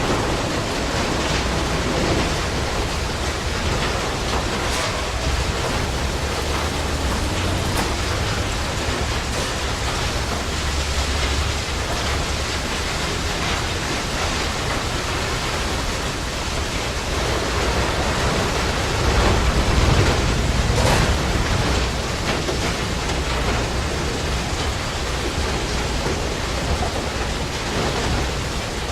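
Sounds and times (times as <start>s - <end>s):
noisy wash: 0.0s - 28.9s
low rumble: 17.1s - 23.8s.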